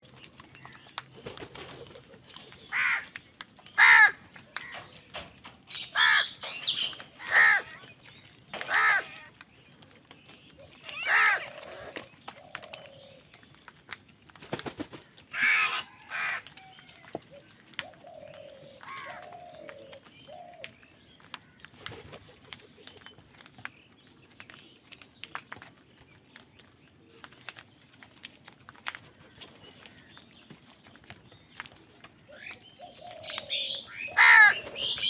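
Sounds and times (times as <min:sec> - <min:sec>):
crows cawing: 0:02.7 - 0:04.9, 0:05.9 - 0:06.4, 0:07.2 - 0:07.9, 0:08.6 - 0:09.3, 0:10.8 - 0:13.0, 0:15.3 - 0:17.2, 0:18.4 - 0:19.8, 0:33.1 - 0:35.0.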